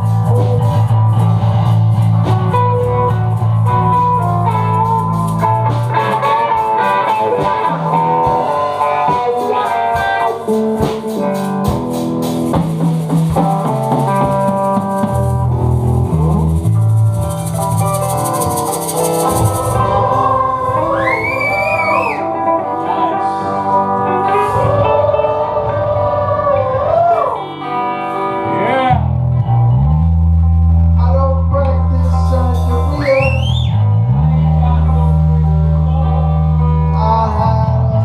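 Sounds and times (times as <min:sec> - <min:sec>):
long low bass notes: 0:00.0 - 0:08.5, 0:13.0 - 0:27.2, 0:28.4 - 0:38.0
bending guitar lead line: 0:00.0 - 0:38.0
blues guitar and bass: 0:00.0 - 0:38.0.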